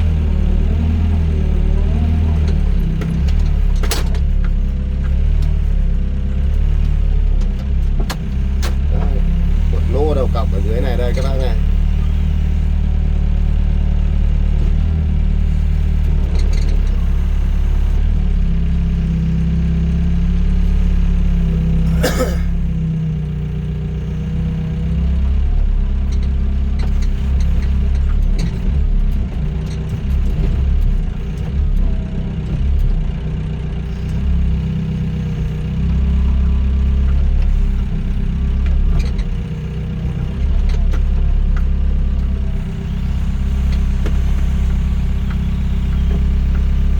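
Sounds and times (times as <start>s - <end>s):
excavator diesel engine running: 0.0s - 46.9s.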